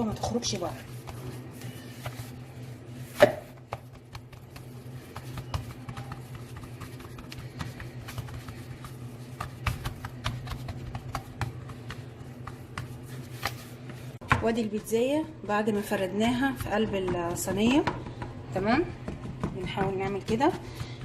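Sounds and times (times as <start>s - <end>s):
dough tapping against baking tray: 16.2s - 21.0s.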